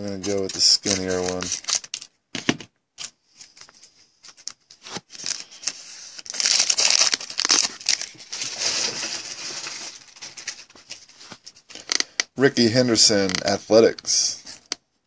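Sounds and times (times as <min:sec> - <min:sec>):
wrapper tearing and crinkling: 0:00.2 - 0:02.1, 0:05.1 - 0:11.0.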